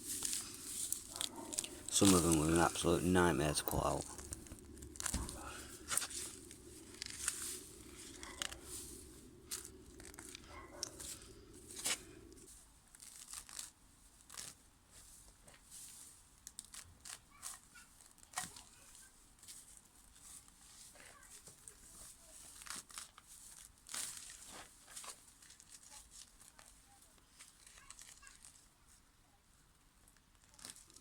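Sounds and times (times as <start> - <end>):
low steady hum: 0.0 - 12.6
plants being torn by hand: 0.2 - 14.6, 16.5 - 18.7.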